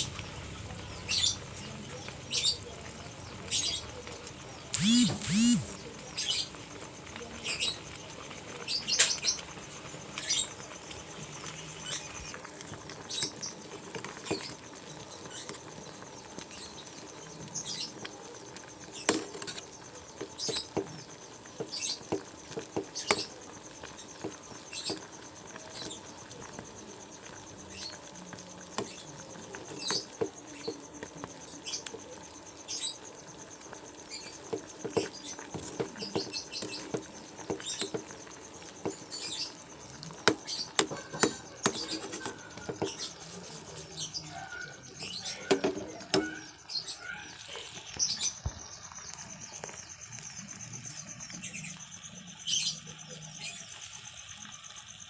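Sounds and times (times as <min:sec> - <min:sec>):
kitchen clicks and taps: 0:40.2 - 0:43.1, 0:45.4 - 0:46.5.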